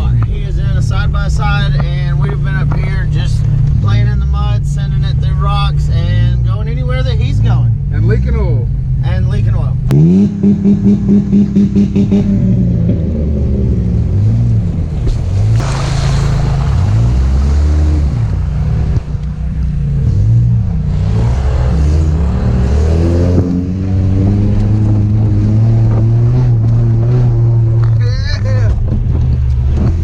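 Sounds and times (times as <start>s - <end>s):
car engine revving: 0.0s - 30.0s
rushing noise: 15.3s - 22.2s.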